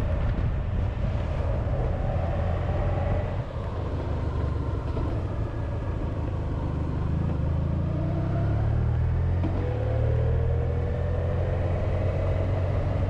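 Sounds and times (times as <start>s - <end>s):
wind noise: 0.0s - 7.4s.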